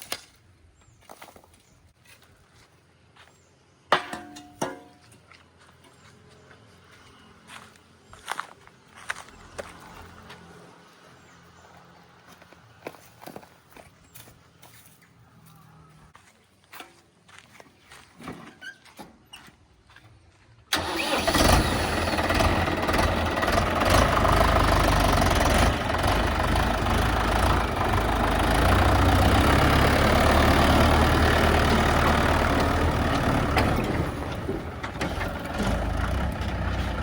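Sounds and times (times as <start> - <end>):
diesel engine running: 20.7 - 37.0.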